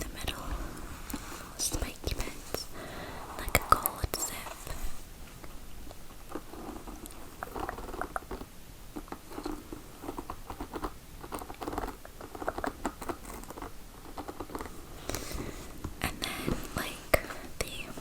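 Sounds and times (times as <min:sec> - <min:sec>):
gum chewing: 0:05.9 - 0:08.5.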